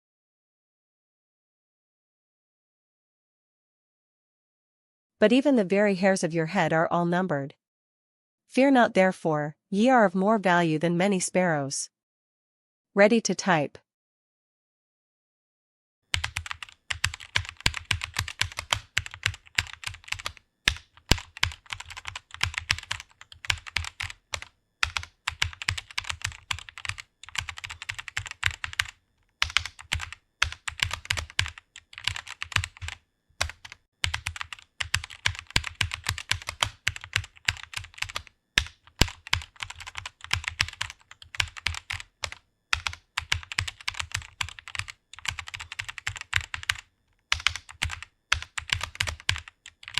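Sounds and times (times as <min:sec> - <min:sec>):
computer keyboard typing: 0:16.1 - 0:49.9.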